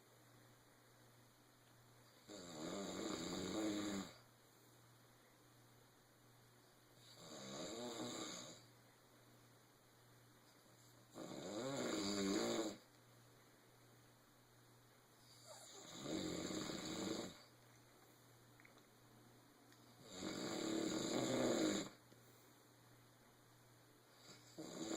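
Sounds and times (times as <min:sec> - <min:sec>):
person snoring: 0:02.2 - 0:04.2, 0:07.0 - 0:08.7, 0:11.1 - 0:12.8, 0:15.4 - 0:17.5, 0:20.0 - 0:22.0, 0:24.2 - 0:24.9.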